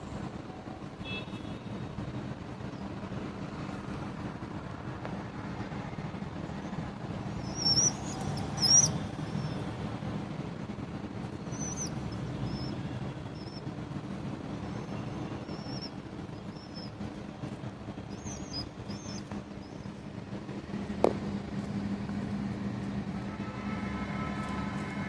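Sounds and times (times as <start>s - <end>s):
low background hum: 5.2s - 25.0s
birds chirping: 7.4s - 9.8s, 11.4s - 13.6s, 14.7s - 17.0s, 18.1s - 20.0s.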